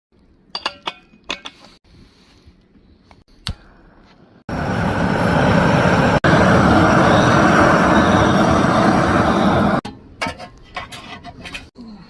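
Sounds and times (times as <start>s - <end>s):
loud steady rushing noise: 4.5s - 9.8s.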